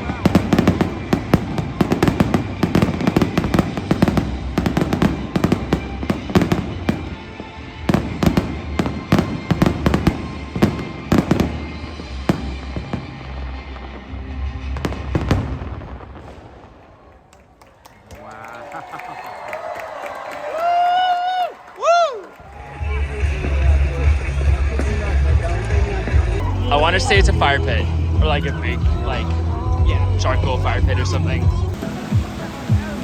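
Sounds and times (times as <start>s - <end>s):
fireworks bangs and crackles: 0.0s - 17.7s, 22.4s - 33.0s
show music: 22.2s - 33.0s.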